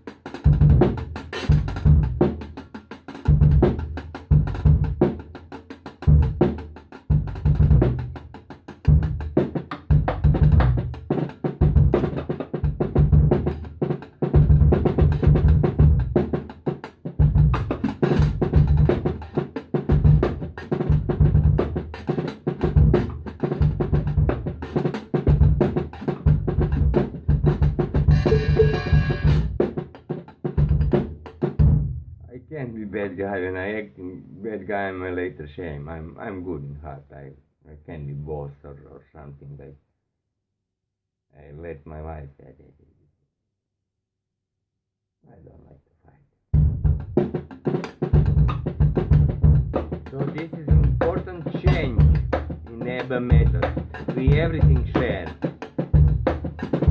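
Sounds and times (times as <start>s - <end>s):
drum kit funk groove: 0.0s - 31.9s, 46.6s - 56.9s.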